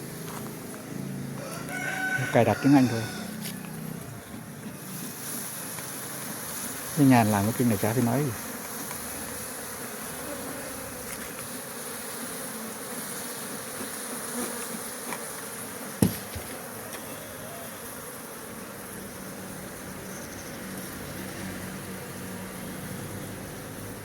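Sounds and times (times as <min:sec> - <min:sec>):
honeybees buzzing: 0:00.0 - 0:24.0
sharp knock: 0:16.0 - 0:16.6.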